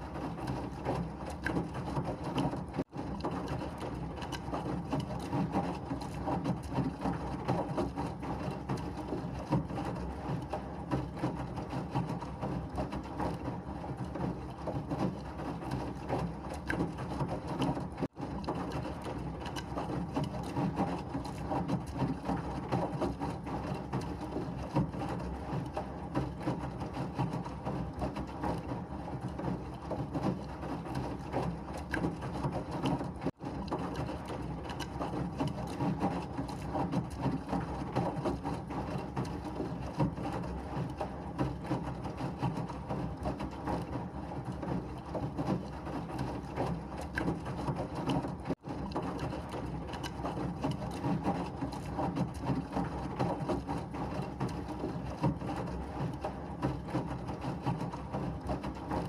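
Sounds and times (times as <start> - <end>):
washing machine churning: 0.0 - 59.0.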